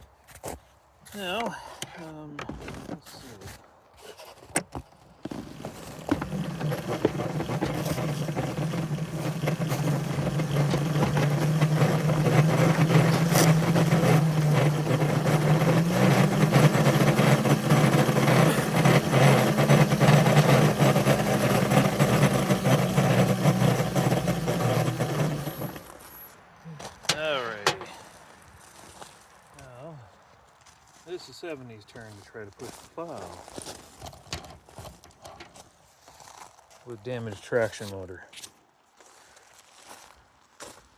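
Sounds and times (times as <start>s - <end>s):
small locomotive running: 5.3s - 26.4s, 27.1s - 28.0s.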